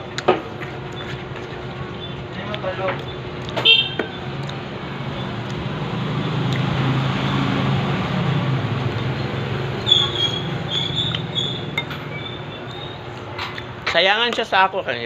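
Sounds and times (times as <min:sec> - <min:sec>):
vehicle passing on road: 0:04.3 - 0:12.6.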